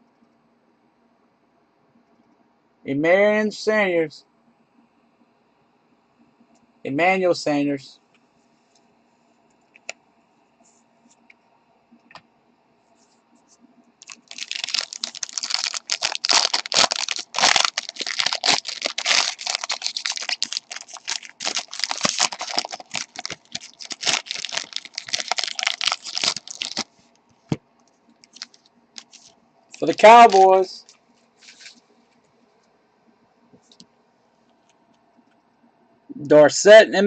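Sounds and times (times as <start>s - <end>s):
trading cards rustling: 14.0s - 26.9s, 28.2s - 31.8s.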